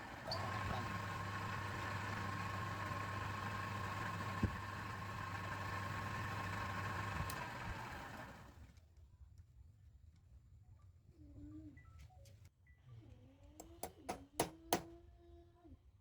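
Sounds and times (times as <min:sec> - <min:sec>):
lathe motor humming and whining: 0:00.0 - 0:08.6.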